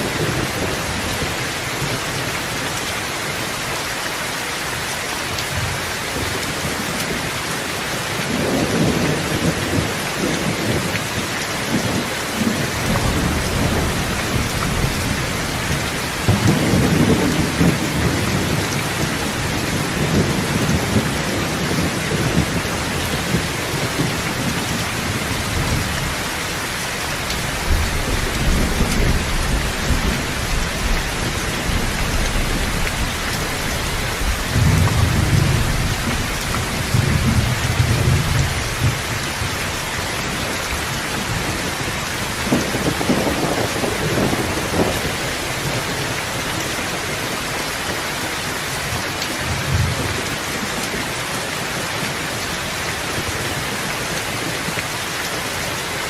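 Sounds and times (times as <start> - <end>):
heavy rain: 0.0 - 56.0
thunder rumbling: 8.2 - 47.4.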